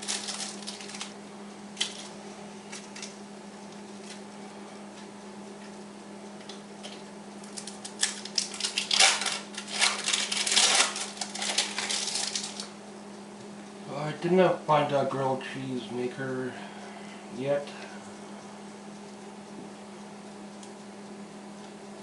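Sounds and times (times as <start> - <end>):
packaging crinkling and clicking: 0.0 - 1.2, 1.8 - 2.1, 2.7 - 3.2, 6.4 - 12.7.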